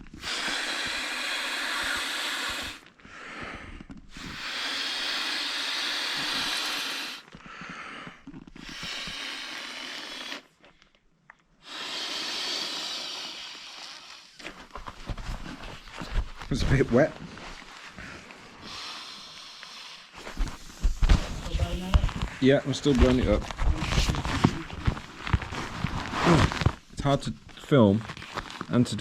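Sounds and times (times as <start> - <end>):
person blowing into pillow valve: 0.0 - 10.7, 11.6 - 16.5, 17.3 - 22.4, 23.0 - 27.0
short quick breaths: 0.2 - 11.0, 11.6 - 16.4, 17.3 - 21.5.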